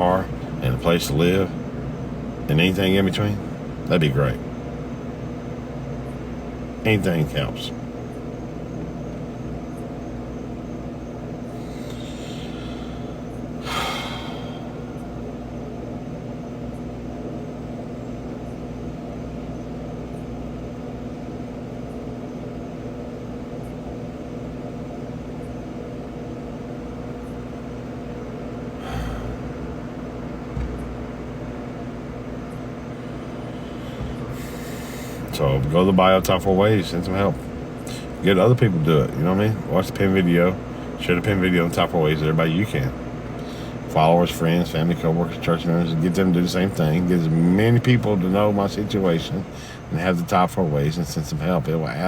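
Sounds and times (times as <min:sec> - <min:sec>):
low background hum with tones: 0:00.0 - 0:52.0
sharp breath: 0:11.6 - 0:14.7.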